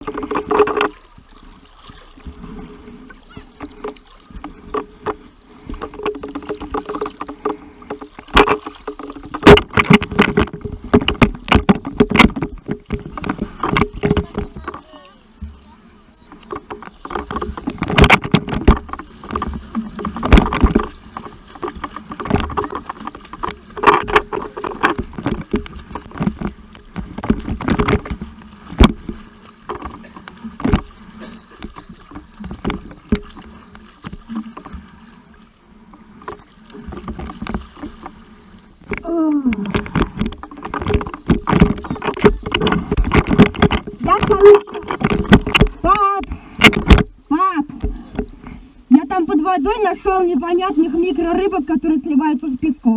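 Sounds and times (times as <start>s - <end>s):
sea water sloshing and splashing: 0.0s - 52.9s
sharp knocks: 3.6s - 15.6s, 16.3s - 34.7s, 38.9s - 47.2s.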